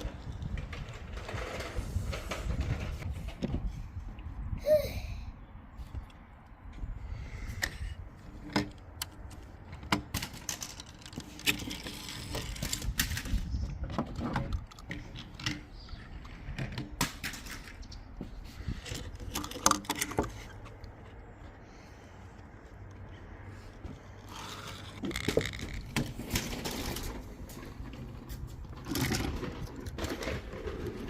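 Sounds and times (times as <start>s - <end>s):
toy cars clattering: 0.0s - 3.1s, 7.6s - 21.0s, 24.2s - 31.0s.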